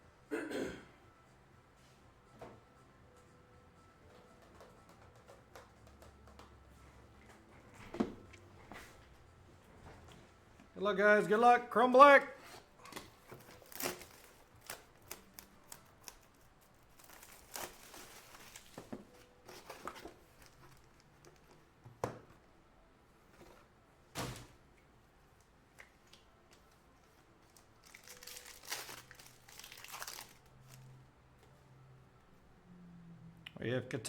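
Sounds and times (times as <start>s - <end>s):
card packs tearing and rustling: 12.5s - 21.5s, 27.4s - 30.9s.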